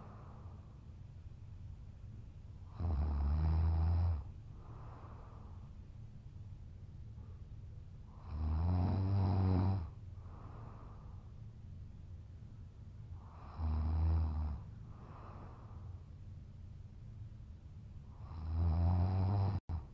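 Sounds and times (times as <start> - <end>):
soft breath: 0.0 - 0.9, 4.5 - 6.1, 7.1 - 8.2, 10.1 - 11.6, 14.6 - 16.3
man snoring heavily: 2.7 - 4.3, 8.2 - 9.9, 13.2 - 14.6, 18.2 - 19.6.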